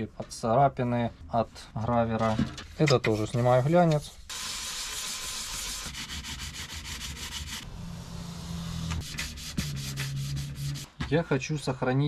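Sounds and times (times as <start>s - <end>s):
hand sanding strokes: 3.1s - 7.6s, 9.0s - 11.0s.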